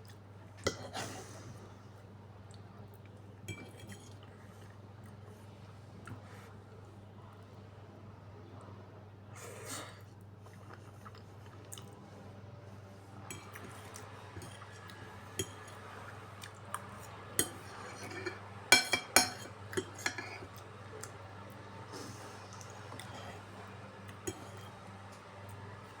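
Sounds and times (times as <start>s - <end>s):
cutlery clinking against dishes: 3.5s - 4.2s, 13.3s - 15.8s, 17.4s - 20.6s, 24.2s - 24.8s.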